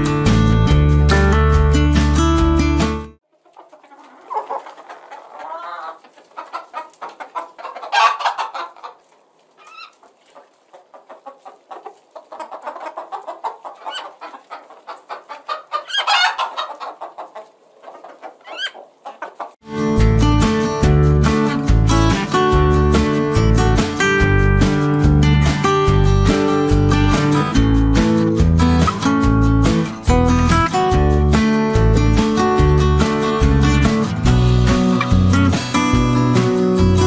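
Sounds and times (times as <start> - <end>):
acoustic guitar music: 0.0 - 3.2, 19.6 - 37.0
chickens clucking: 3.2 - 19.6, 21.3 - 37.0
chickens squawking: 3.3 - 19.6, 33.0 - 37.0.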